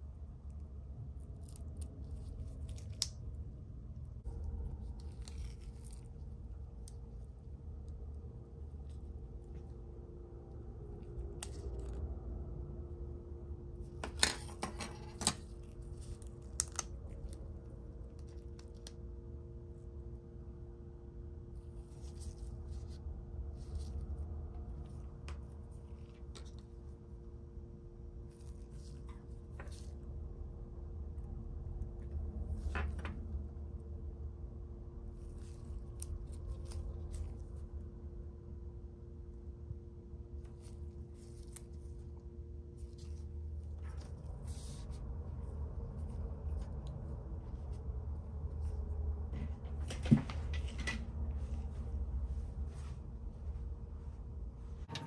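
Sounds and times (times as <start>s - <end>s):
steady low hum: 0.0s - 55.0s
scratching and handling of small parts: 0.5s - 12.1s, 13.8s - 19.0s, 40.3s - 51.7s.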